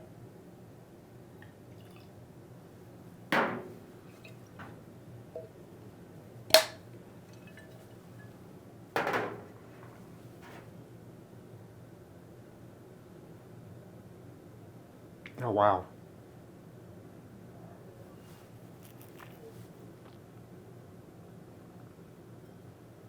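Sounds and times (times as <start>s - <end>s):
glass clink: 1.8s - 2.1s, 3.4s - 4.6s, 5.4s - 5.6s, 6.5s - 8.4s
bottle knocking on table: 3.4s - 4.4s, 9.0s - 9.5s.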